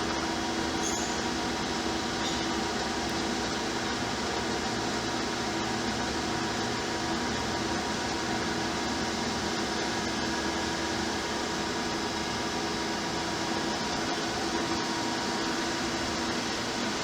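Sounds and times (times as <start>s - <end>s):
grinding wheel hiss: 0.0s - 4.0s
grinder machine hum: 0.0s - 17.0s.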